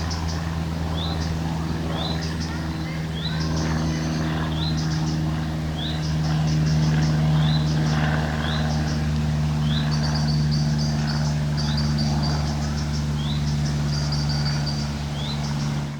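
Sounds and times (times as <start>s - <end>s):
low mechanical hum: 0.0s - 15.9s
small birds chirping: 0.0s - 15.9s
high bird twittering: 5.8s - 15.8s.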